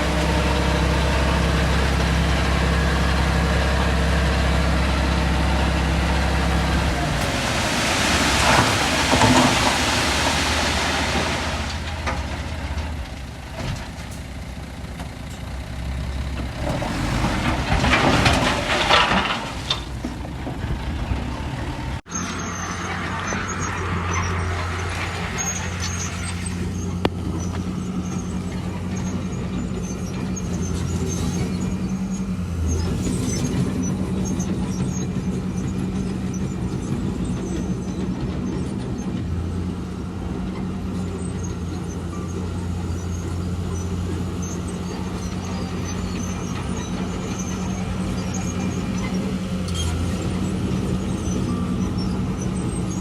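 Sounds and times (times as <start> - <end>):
heavy diesel machinery running: 0.0 - 53.0
loud rushes of noise: 5.4 - 12.6.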